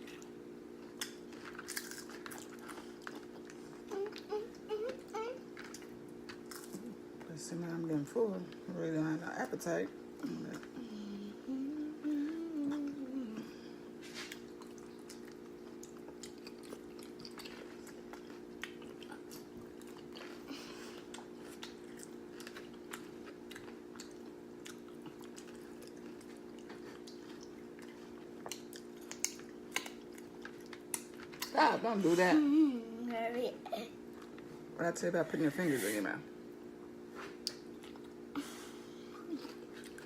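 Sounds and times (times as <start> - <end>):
chewing and crunching chips: 0.0 - 7.0, 14.0 - 31.6, 37.3 - 38.3, 39.1 - 40.0
low hum: 1.6 - 24.2.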